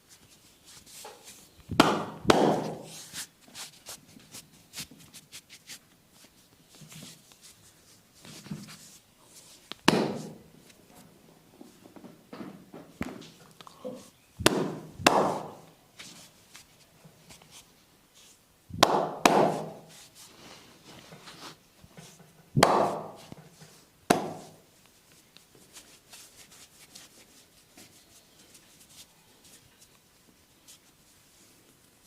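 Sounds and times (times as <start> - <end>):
hand strikes on body: 1.7 - 2.9, 9.8 - 10.4, 14.4 - 15.7, 18.7 - 19.9, 22.6 - 23.2, 24.1 - 24.6.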